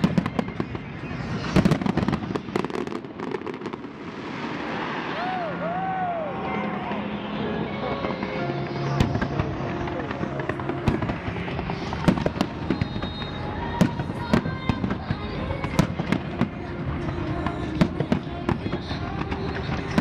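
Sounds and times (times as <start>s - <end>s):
continuous noisy din: 0.0s - 20.0s
fireworks bangs and crackles: 0.0s - 20.0s.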